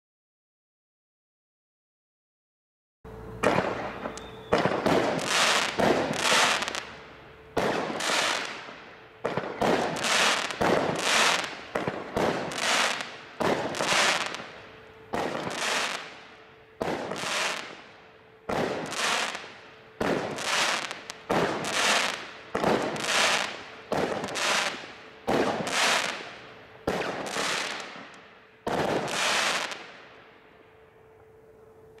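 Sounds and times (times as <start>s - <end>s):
firework bangs: 3.4s - 7.0s, 7.6s - 16.2s, 16.8s - 17.8s, 18.5s - 30.0s.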